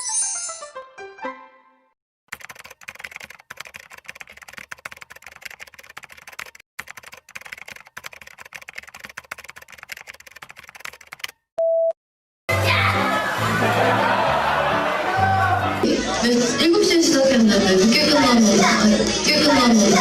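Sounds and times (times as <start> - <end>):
rapid keyboard typing: 2.3 - 11.4.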